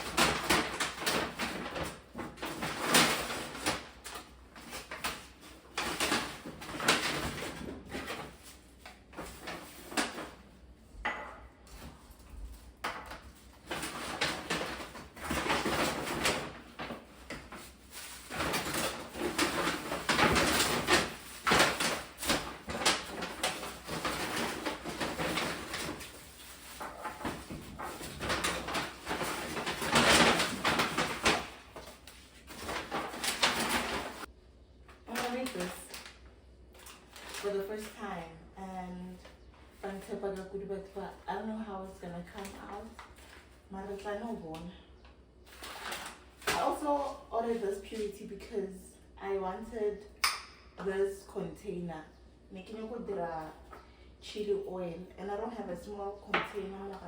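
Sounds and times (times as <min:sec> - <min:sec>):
kitchen items clattering: 0:00.0 - 0:34.3, 0:35.1 - 0:36.1.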